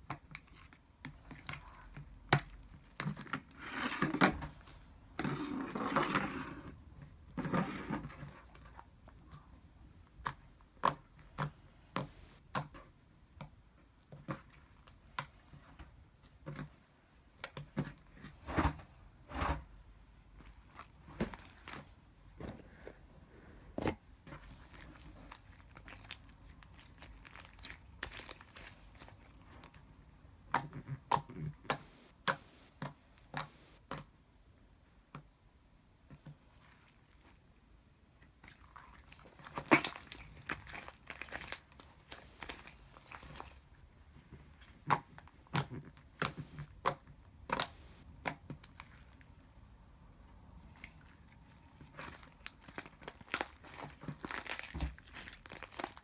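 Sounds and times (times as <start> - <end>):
slime crackling and popping: 38.6 - 43.6, 51.8 - 56.0.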